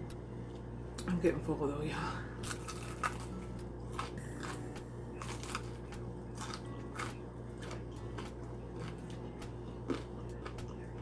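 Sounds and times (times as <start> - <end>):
faint steady hum: 0.0 - 11.0
crispy chewing crunches: 2.4 - 11.0.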